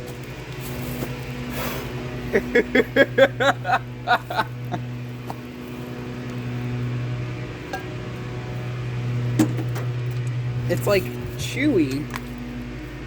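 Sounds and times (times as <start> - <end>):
microwave oven humming: 0.0 - 13.0
person laughing: 2.3 - 5.0.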